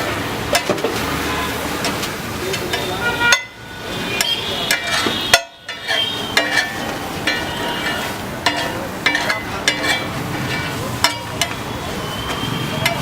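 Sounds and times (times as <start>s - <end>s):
metal spatula scraping on griddle: 0.1s - 13.0s
food sizzling: 3.9s - 13.0s.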